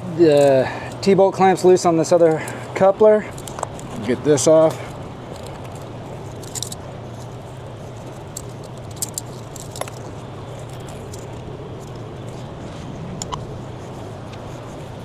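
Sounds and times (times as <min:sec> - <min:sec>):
steady low hum: 0:00.0 - 0:15.0
metal hose clamps clinking: 0:00.3 - 0:06.8, 0:08.0 - 0:12.0.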